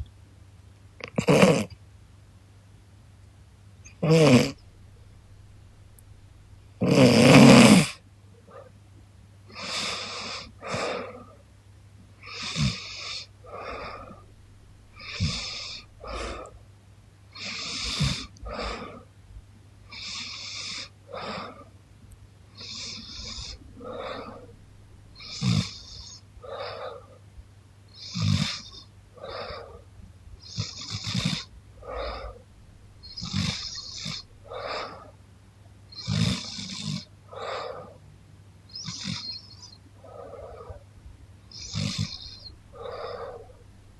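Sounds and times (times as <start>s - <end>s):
woman snoring: 1.1s - 1.7s, 4.0s - 4.7s, 6.8s - 8.0s, 12.2s - 14.3s, 14.9s - 16.5s, 17.4s - 19.1s, 22.6s - 27.1s, 30.4s - 32.4s, 33.0s - 35.1s, 36.0s - 37.1s, 41.5s - 43.6s
slow breathing: 12.5s - 16.7s, 17.4s - 19.5s, 22.5s - 27.2s, 28.6s - 35.2s, 41.5s - 43.9s.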